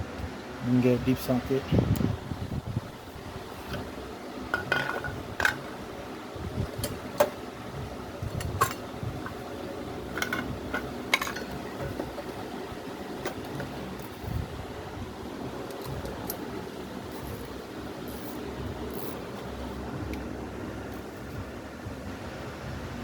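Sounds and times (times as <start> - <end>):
metal tools clinking: 10.1 - 12.4, 17.1 - 19.2.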